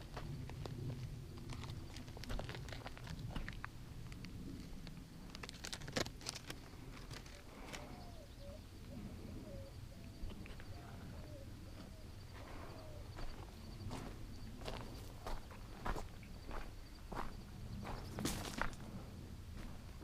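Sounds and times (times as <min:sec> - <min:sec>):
footsteps on a trail: 0:00.0 - 0:03.8, 0:11.7 - 0:20.0
bird calling low wavering notes: 0:07.8 - 0:13.8.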